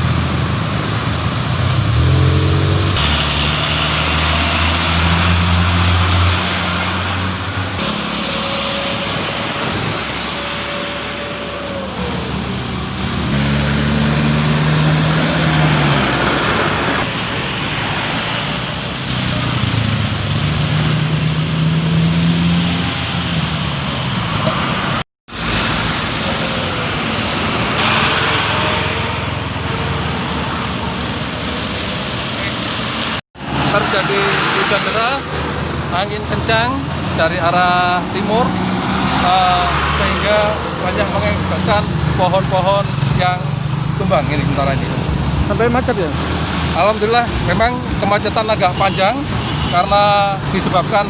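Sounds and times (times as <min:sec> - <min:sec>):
vehicle engines passing: 0:00.0 - 0:07.8, 0:11.8 - 0:51.0
tyre and road noise: 0:00.0 - 0:08.3.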